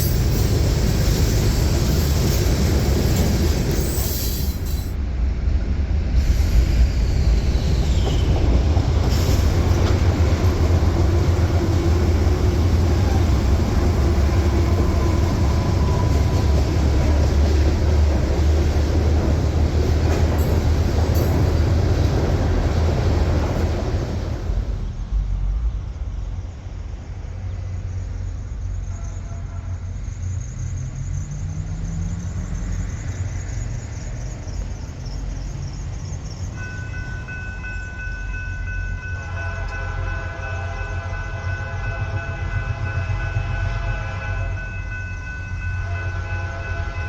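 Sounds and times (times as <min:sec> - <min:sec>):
diesel locomotive engine rumbling: 0:00.0 - 0:47.0
train air horn: 0:28.9 - 0:30.0, 0:39.0 - 0:47.0.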